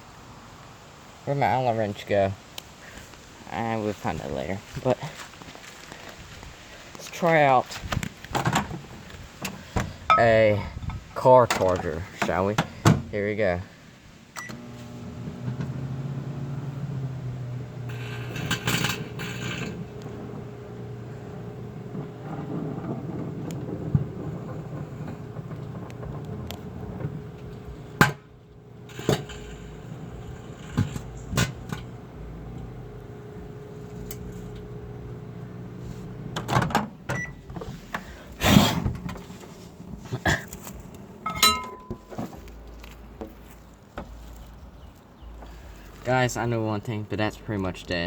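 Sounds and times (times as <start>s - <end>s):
microwave oven humming: 14.4s - 37.6s.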